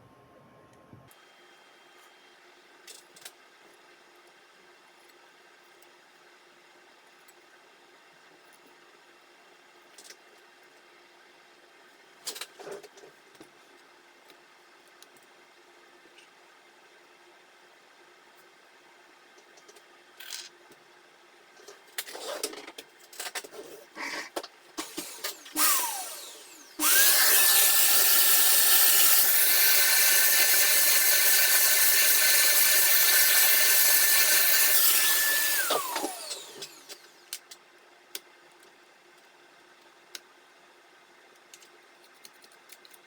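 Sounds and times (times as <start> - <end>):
power tool motor whine: 24.8 - 37.3.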